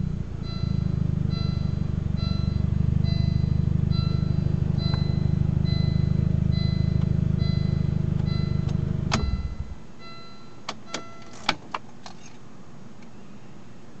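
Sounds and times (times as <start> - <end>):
low hum: 0.0 - 10.4
high warning chime beeping: 0.1 - 11.5.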